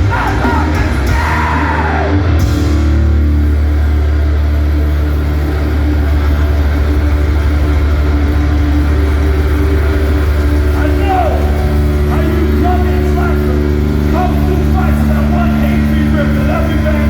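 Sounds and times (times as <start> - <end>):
shouted vocals: 0.0 - 2.4
punk band playing loud: 0.0 - 17.0.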